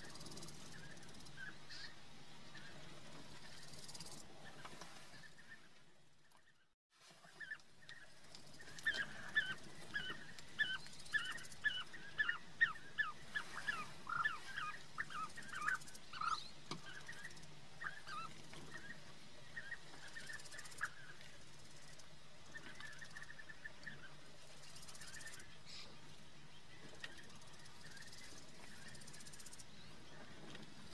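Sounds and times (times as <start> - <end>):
bird chirping: 7.4 - 21.1.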